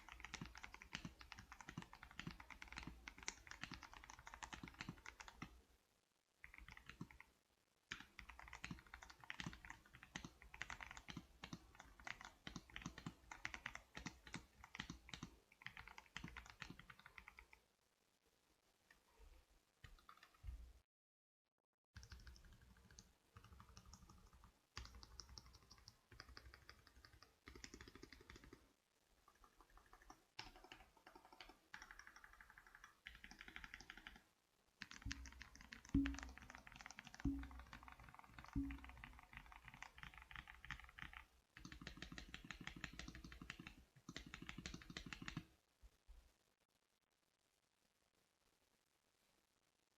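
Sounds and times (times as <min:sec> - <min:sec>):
mechanical keyboard typing: 0:00.0 - 0:05.6, 0:06.4 - 0:07.3, 0:07.9 - 0:17.6, 0:19.9 - 0:20.4, 0:22.0 - 0:28.6, 0:29.3 - 0:45.4
heavy low keystrokes: 0:36.0 - 0:36.6.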